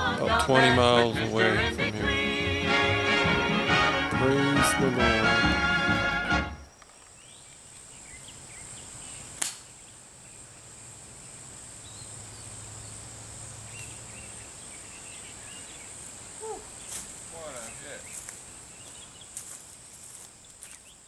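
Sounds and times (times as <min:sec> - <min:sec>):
faint bird chirps: 0:06.8 - 0:10.7.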